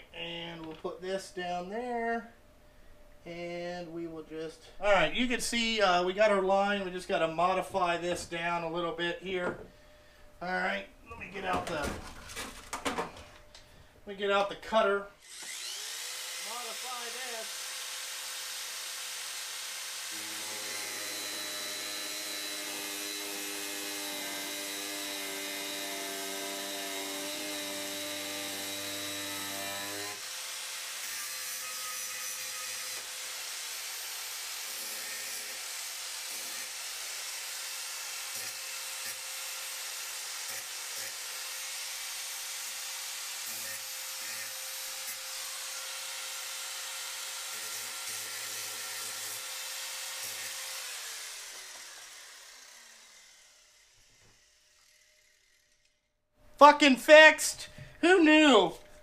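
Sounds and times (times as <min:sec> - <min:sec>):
power cutting tool cutting metal: 0:15.2 - 0:55.9.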